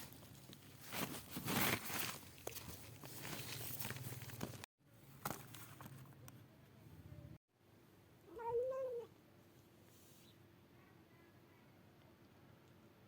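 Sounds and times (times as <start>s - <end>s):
rustling and crinkling: 0.0s - 6.3s
cat meowing: 8.3s - 9.1s.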